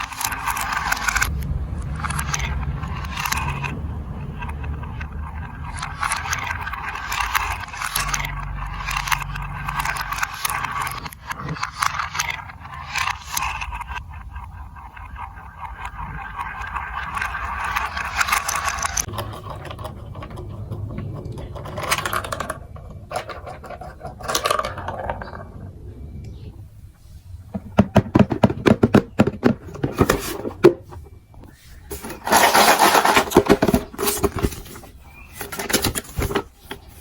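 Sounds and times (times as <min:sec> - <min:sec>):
marbles rolling down plastic track: 0:00.0 - 0:25.6, 0:31.9 - 0:34.4
marbles clattering: 0:00.0 - 0:25.7, 0:31.9 - 0:34.6.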